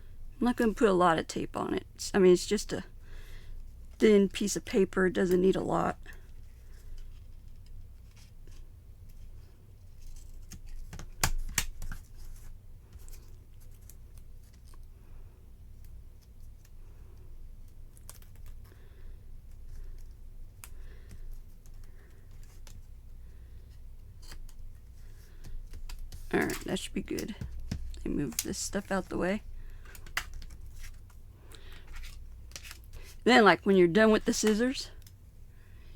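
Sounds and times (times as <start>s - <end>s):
paper and tape handling: 9.9s - 14.9s.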